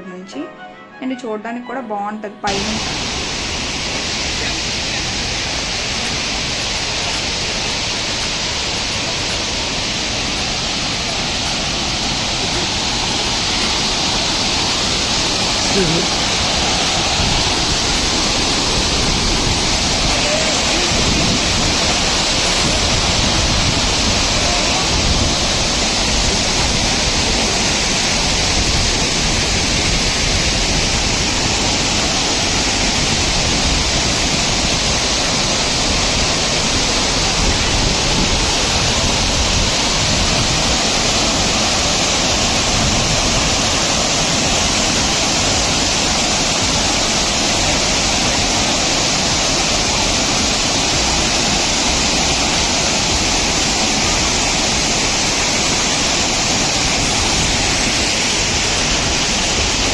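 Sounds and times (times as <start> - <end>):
waterfall rushing over rock: 2.5 - 59.9.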